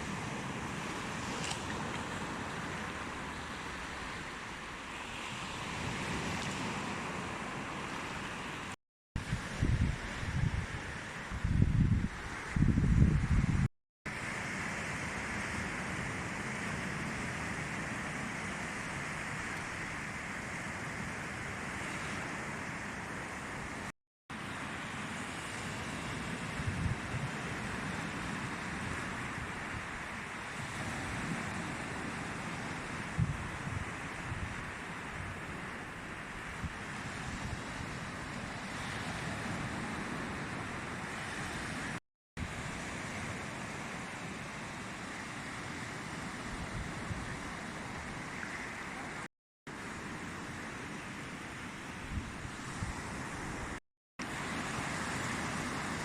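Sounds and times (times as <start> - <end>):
sea surf washing onto beach: 0.0 - 56.0
wind buffeting microphone: 9.2 - 13.7, 30.6 - 35.7.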